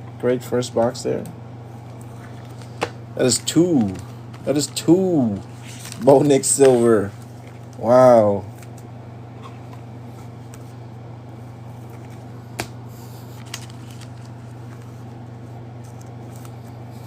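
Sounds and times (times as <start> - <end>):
low electrical hum: 0.0 - 17.0
trading cards being flipped: 1.9 - 7.8, 11.8 - 15.1, 15.8 - 16.8.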